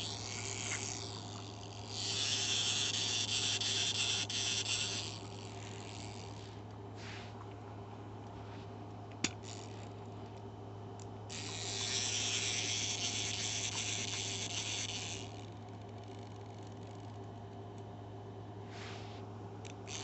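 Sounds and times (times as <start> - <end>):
clockwork toy gears whirring: 0.0 - 6.6, 9.2 - 9.9, 11.3 - 17.2, 19.6 - 20.0.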